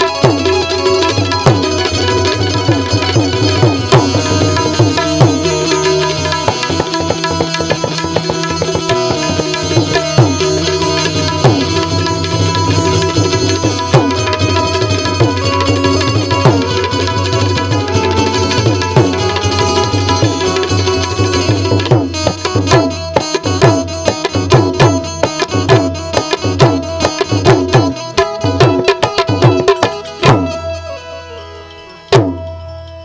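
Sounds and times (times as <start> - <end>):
tabla strokes: 0.0 - 33.0.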